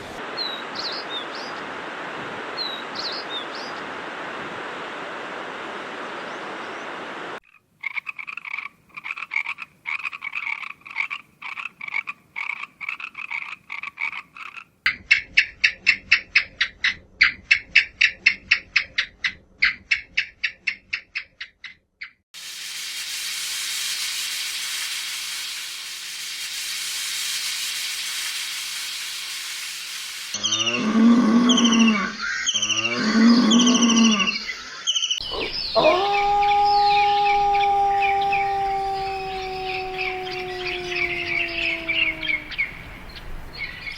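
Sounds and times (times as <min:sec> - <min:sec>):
steady hiss: 0:00.0 - 0:07.4, 0:22.4 - 0:43.9
long loud mooing calls: 0:30.4 - 0:34.5, 0:35.3 - 0:42.8.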